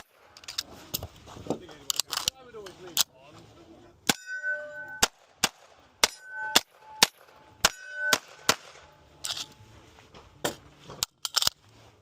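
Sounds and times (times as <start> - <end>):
steel targets ringing: 4.1 - 5.2, 6.0 - 9.2
pistol shots: 4.9 - 8.9.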